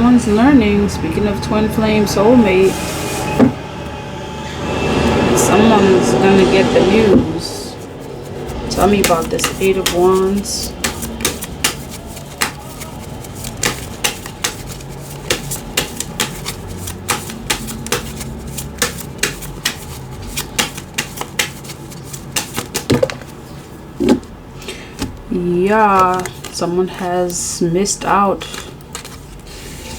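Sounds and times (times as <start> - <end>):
cards being shuffled: 7.8 - 25.2, 25.8 - 29.9.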